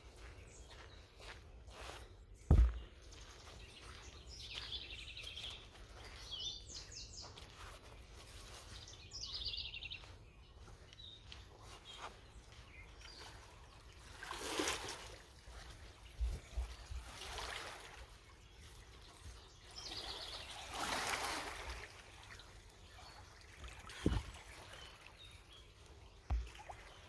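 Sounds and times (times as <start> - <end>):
songbirds trilling: 0.0 - 14.4, 15.5 - 27.0
low thump: 2.5 - 2.9.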